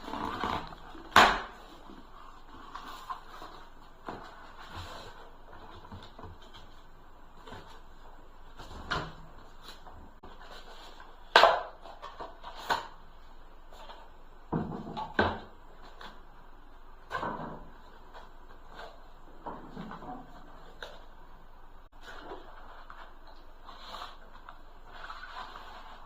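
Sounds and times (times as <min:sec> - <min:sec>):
objects clunking and knocking: 0:13.9 - 0:16.2, 0:17.1 - 0:21.1.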